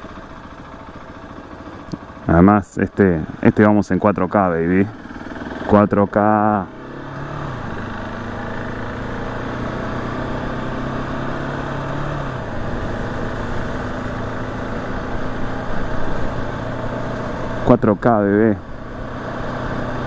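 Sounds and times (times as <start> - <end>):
motorcycle engine running: 0.0 - 20.0.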